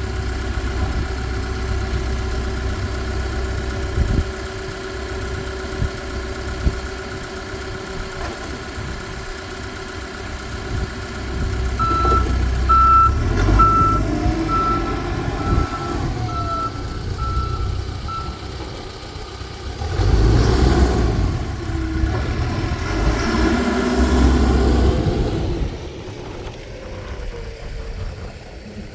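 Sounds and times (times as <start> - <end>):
diesel engine running: 0.0 - 28.9
reverse alarm beeping: 11.8 - 18.5.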